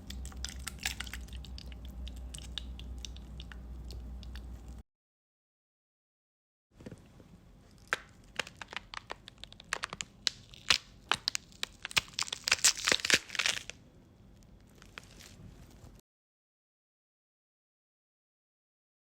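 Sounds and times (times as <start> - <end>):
crackling snaps and crinkles: 0.0 - 4.8, 6.8 - 16.0.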